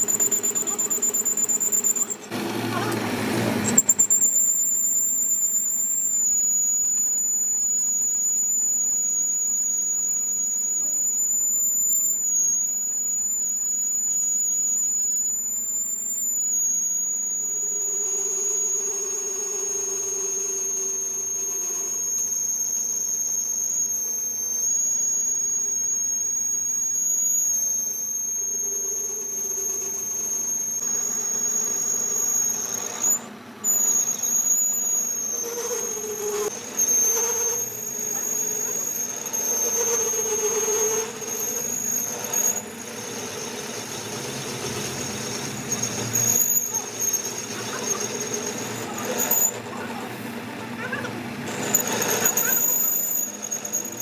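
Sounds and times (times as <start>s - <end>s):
machine tool running: 0.0s - 7.3s, 26.6s - 54.0s
high-pitched cutting squeal: 0.0s - 54.0s.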